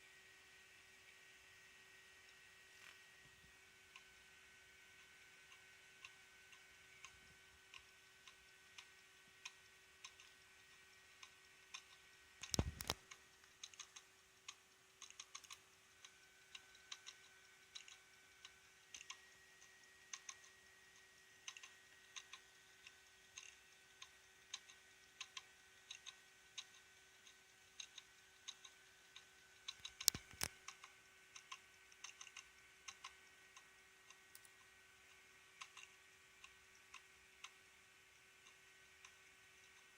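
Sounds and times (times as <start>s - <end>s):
faint steady whine: 0.0s - 39.9s
hard disk drive clicking: 3.8s - 39.9s.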